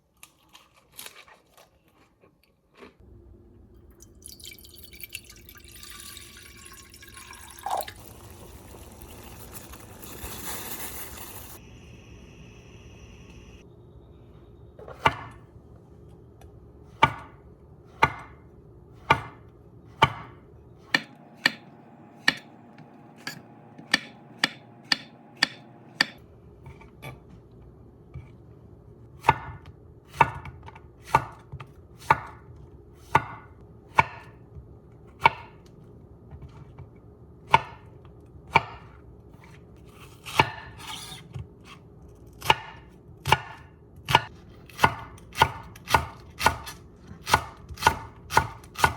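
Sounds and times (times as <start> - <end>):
knife chopping on cutting board: 16.9 - 18.4, 19.0 - 26.2, 33.1 - 34.4, 42.4 - 48.9.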